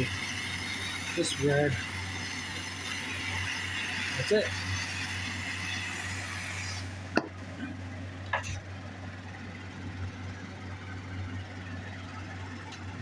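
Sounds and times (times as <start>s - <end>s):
gas torch hissing: 0.0s - 8.6s
electric fan hum: 0.0s - 13.0s.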